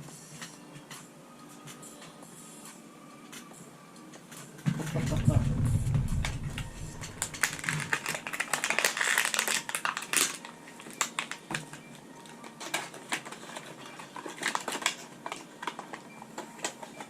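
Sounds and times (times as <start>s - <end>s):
plastic packaging crinkling: 5.2s - 16.0s.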